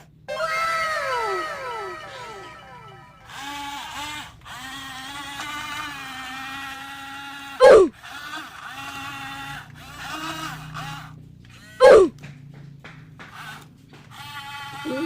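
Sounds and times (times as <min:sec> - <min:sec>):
downward-sliding sound effect: 0:00.3 - 0:03.6
electronic background music: 0:00.4 - 0:03.4.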